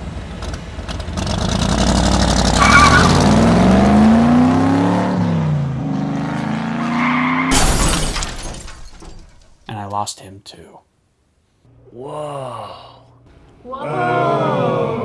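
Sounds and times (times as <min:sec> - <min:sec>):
racing car engines revving: 0:00.0 - 0:07.5
tires squealing: 0:00.0 - 0:09.2
loud crash: 0:07.5 - 0:09.7.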